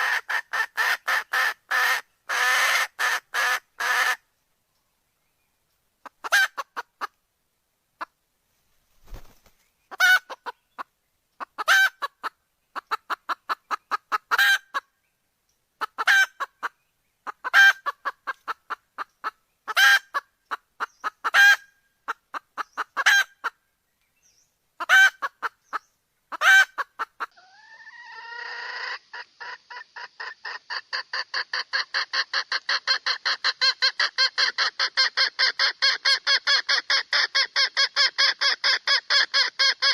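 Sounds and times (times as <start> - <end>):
hen clucking: 0.0 - 4.2, 6.0 - 7.2, 9.1 - 14.9, 15.8 - 23.6, 24.8 - 39.9
hen calling: 9.9 - 14.9.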